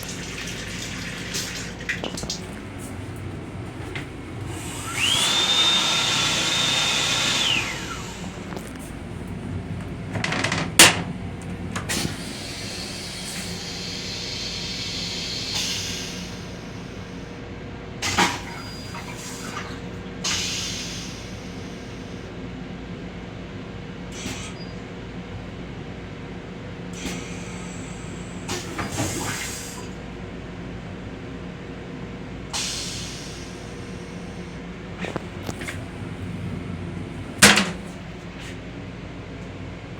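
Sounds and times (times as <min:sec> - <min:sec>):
train running rumble: 0:02.2 - 0:05.4, 0:08.2 - 0:17.2, 0:32.5 - 0:39.0.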